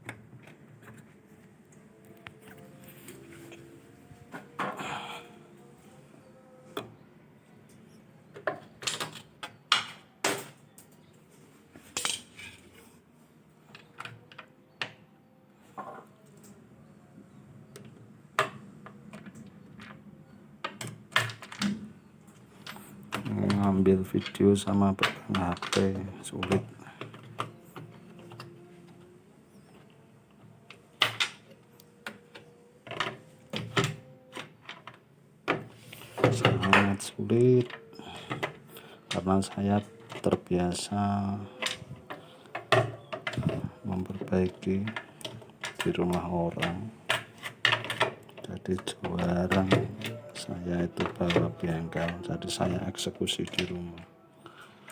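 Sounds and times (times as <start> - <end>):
metal tools clinking and knocking: 11.8 - 12.7
tools and parts clicking: 11.8 - 12.9, 41.6 - 54.1.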